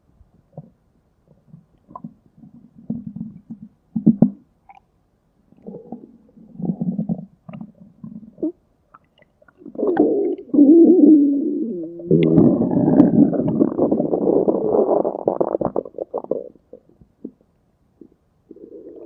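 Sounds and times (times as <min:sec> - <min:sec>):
stomach growling: 0:05.6 - 0:17.4, 0:18.0 - 0:19.0.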